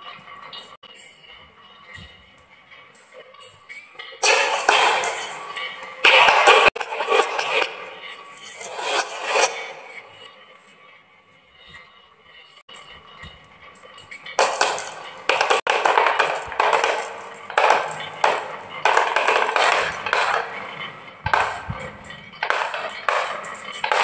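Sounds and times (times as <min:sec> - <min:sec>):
marbles clacking down wooden run: 0:04.2 - 0:08.6, 0:14.4 - 0:24.0.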